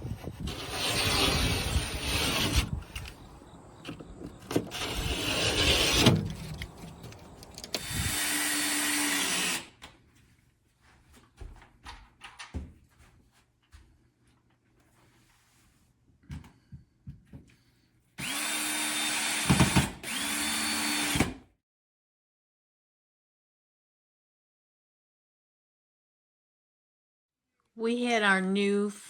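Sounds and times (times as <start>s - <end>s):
handheld power tool running: 0.5s - 3.1s, 4.6s - 9.7s, 18.2s - 21.4s.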